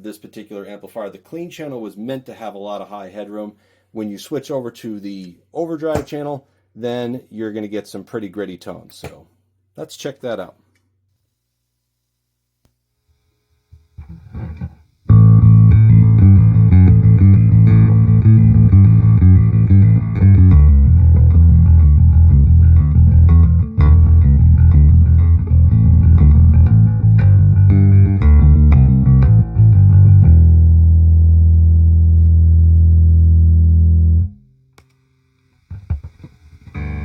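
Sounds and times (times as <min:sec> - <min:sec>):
electric bass playing: 0:14.2 - 0:34.6, 0:35.7 - 0:37.0.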